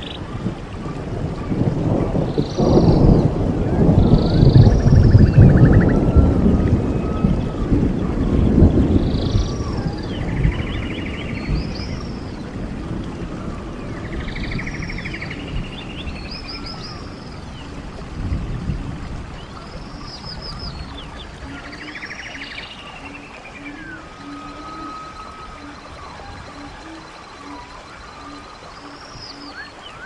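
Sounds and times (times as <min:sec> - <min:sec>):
stream water rushing: 0:00.0 - 0:30.0.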